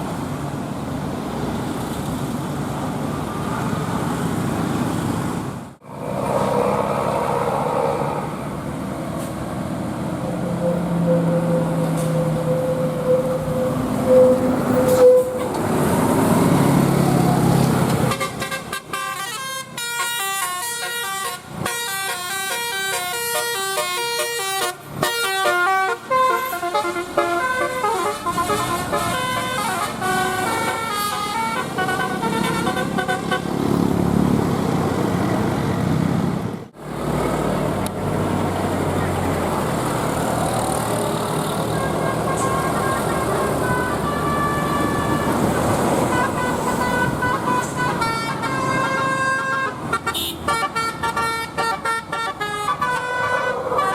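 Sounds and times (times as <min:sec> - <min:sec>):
bus engine rumble: 0:00.0 - 0:53.9
multi-tone bus horn melody: 0:10.2 - 0:15.6, 0:17.9 - 0:33.6, 0:41.5 - 0:53.9
steady horn tone: 0:10.2 - 0:15.6.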